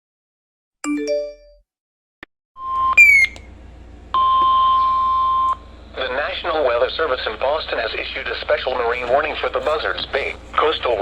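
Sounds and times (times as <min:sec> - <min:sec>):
short beep: 0:02.6 - 0:03.4
falling chirp: 0:03.0 - 0:03.4
radio hiss: 0:06.0 - 0:11.0.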